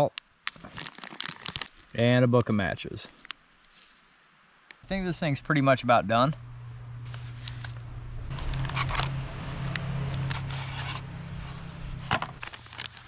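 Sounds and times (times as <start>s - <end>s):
plastic pouch crinkling: 0.4s - 2.0s, 12.4s - 13.0s
steady low hum: 4.8s - 12.8s.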